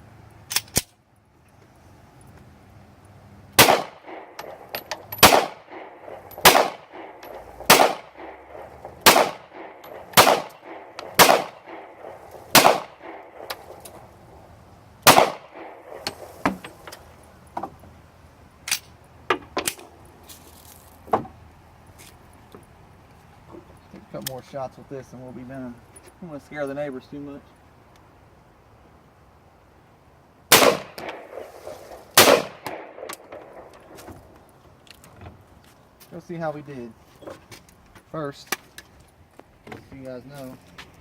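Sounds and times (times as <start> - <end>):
handgun shots: 3.6 - 4.6, 5.2 - 14.0, 15.1 - 16.3, 30.5 - 31.5, 32.2 - 34.0
metallic clicks and clanks: 4.3 - 5.3.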